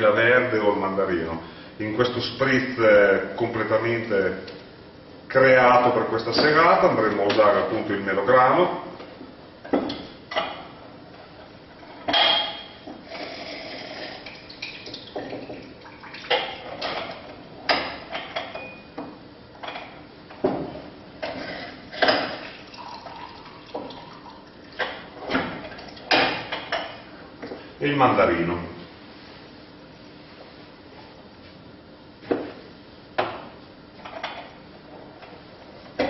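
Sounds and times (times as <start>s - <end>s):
glassware and utensils clinking: 12.0s - 12.8s
liquid pouring: 13.2s - 16.8s, 21.6s - 26.1s.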